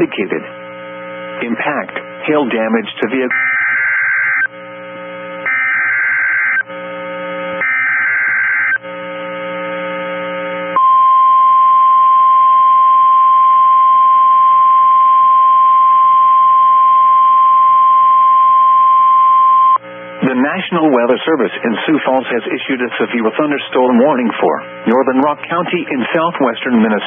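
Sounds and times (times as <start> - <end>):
steady warning alarm tone: 3.3 - 4.6, 5.4 - 6.8, 7.5 - 8.9, 10.2 - 19.8.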